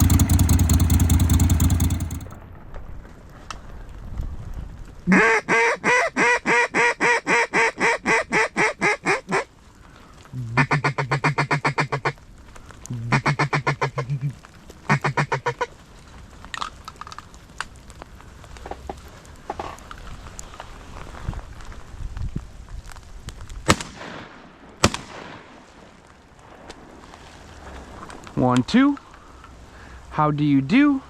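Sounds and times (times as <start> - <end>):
duck call quacks: 5.1 - 9.5, 10.6 - 12.2, 13.1 - 14.3, 14.9 - 15.7.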